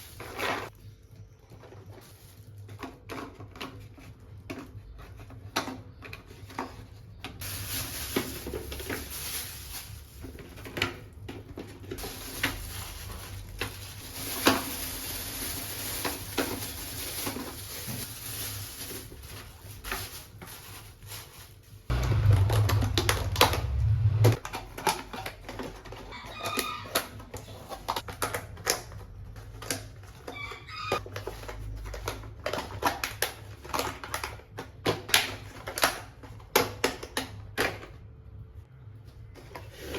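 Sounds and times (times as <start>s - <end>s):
groceries and containers handled: 0.0s - 39.9s
low rumble: 21.9s - 24.4s
rooster crowing: 26.1s - 27.0s, 30.3s - 31.0s.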